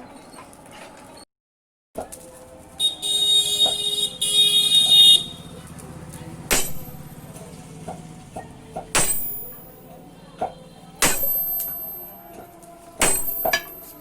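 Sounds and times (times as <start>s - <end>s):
high-pitched horn blasts: 2.8s - 5.5s
metal clang ringing: 6.5s - 9.8s, 10.4s - 14.0s.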